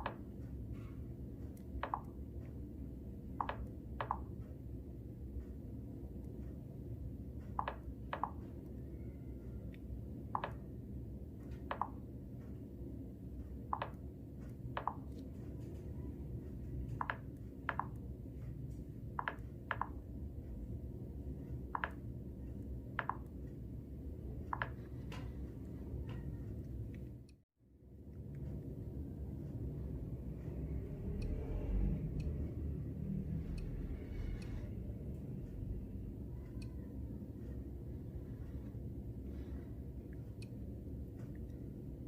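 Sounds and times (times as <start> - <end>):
steady low hum: 0.0 - 42.0
smartphone clicking: 1.8 - 2.2, 3.4 - 4.3, 7.6 - 8.4, 10.3 - 10.6, 11.7 - 12.0, 19.2 - 20.0.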